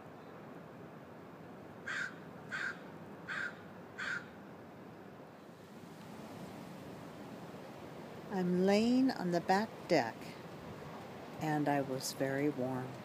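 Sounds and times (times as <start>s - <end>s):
steady background hiss: 0.0s - 13.0s
gull calling: 1.9s - 4.3s.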